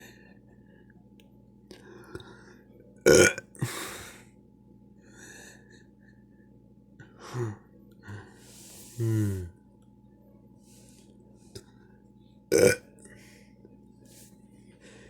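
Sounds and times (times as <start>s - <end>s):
loud burp: 3.1s - 3.4s, 12.5s - 12.8s.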